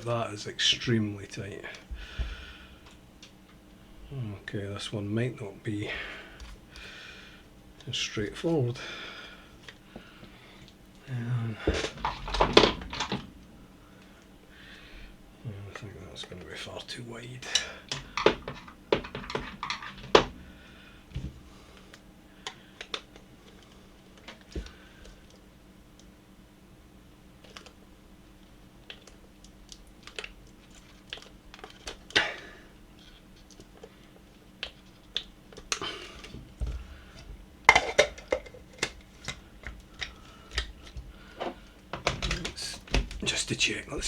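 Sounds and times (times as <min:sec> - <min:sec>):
parts clattering: 0:09.6 - 0:14.9, 0:17.4 - 0:25.4, 0:35.5 - 0:44.0
hand tools clicking and knocking: 0:17.5 - 0:20.4.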